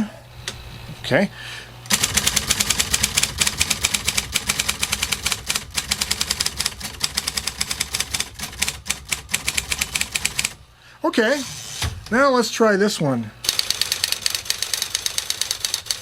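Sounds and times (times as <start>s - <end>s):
typewriter motor hum: 1.8s - 10.6s, 13.4s - 16.0s
typewriter clacking: 1.9s - 10.6s, 13.4s - 16.0s.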